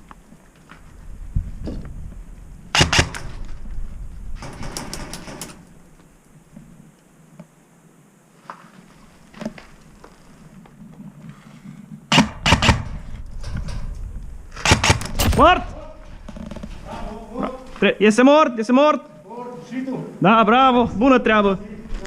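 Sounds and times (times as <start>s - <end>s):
airsoft gun shots echoing: 2.8s - 3.2s, 12.1s - 13.0s, 14.6s - 15.6s.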